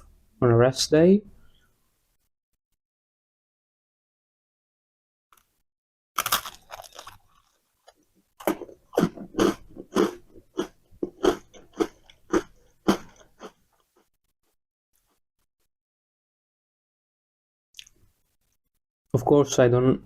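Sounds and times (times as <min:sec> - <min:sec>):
chewing food: 0:06.2 - 0:13.9.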